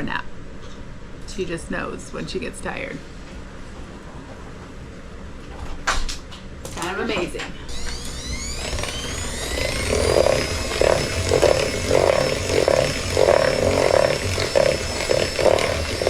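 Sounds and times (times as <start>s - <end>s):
electric mixer beating batter: 7.7s - 16.0s.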